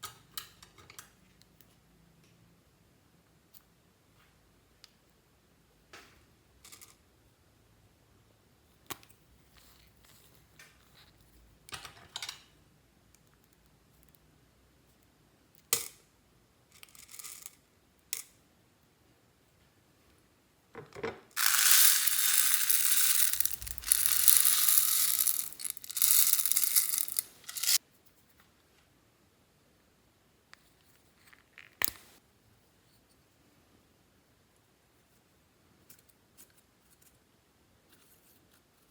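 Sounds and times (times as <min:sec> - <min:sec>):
loud crinkling and crushing: 0:21.4 - 0:27.8
materials clicking and rustling: 0:21.4 - 0:27.8.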